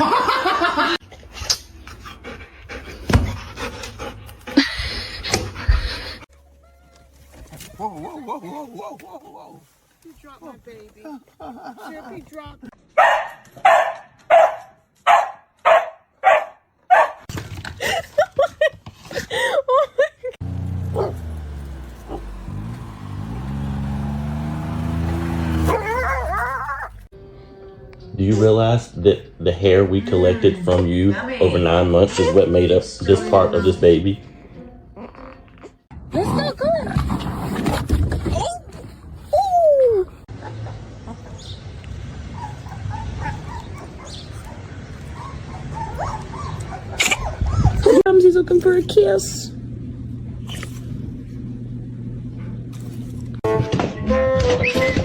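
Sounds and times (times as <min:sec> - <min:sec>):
dog panting: 0:01.8 - 0:06.2
vehicle engine running: 0:20.4 - 0:27.1, 0:48.3 - 0:53.4.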